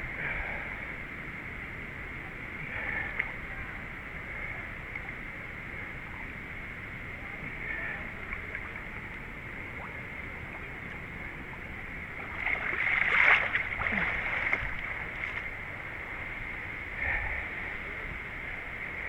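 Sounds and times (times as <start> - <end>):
water splashing from wading: 7.5 - 16.0.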